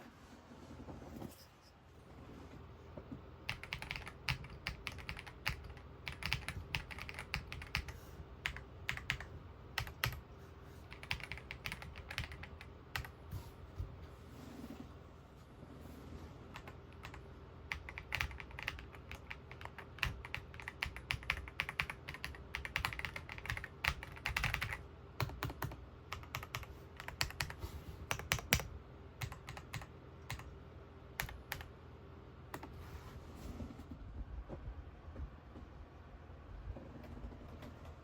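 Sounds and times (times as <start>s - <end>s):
mechanical keyboard typing: 3.5s - 10.2s, 10.9s - 13.2s, 16.5s - 30.5s, 31.2s - 31.7s.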